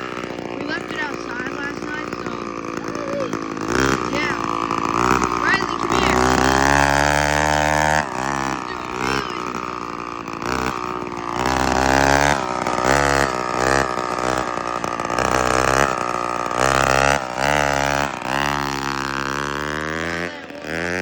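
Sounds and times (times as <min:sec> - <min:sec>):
loud buzzy scooter engine revving: 0:00.0 - 0:21.0.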